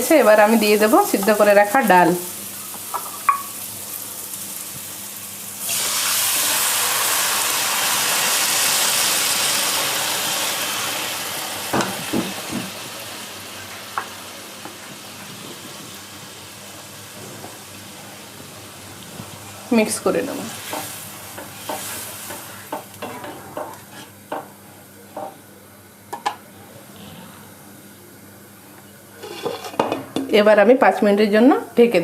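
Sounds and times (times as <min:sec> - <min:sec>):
loud sizzle in a pan: 0:00.0 - 0:25.5.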